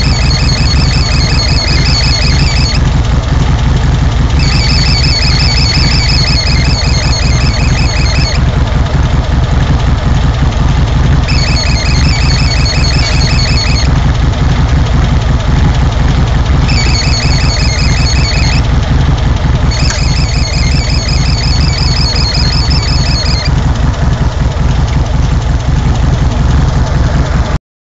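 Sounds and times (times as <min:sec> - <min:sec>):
high-pitched pulsing chirps: 0:00.0 - 0:02.9, 0:04.3 - 0:08.5, 0:11.3 - 0:14.0, 0:16.6 - 0:18.7, 0:19.7 - 0:23.5
car engine idling: 0:00.0 - 0:27.6.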